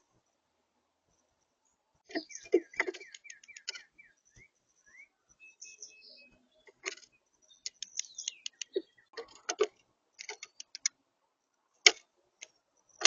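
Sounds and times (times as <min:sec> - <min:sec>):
bird clicks and knocks: 0:02.5 - 0:03.9, 0:06.6 - 0:11.0, 0:11.8 - 0:12.6.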